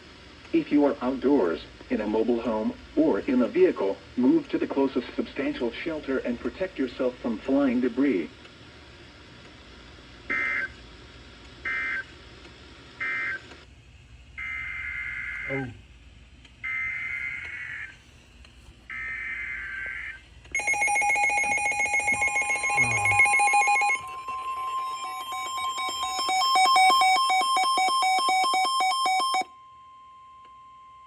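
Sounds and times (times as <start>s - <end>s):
pulsing electronic alarm: 18.9s - 31.0s
screeching data bursts: 19.8s - 29.4s
steady warning tone: 20.6s - 31.0s.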